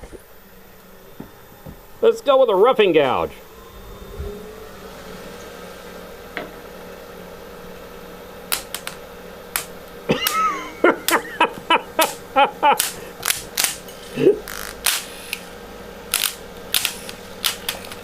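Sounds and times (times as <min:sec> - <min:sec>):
lathe hum: 0:00.0 - 0:14.4.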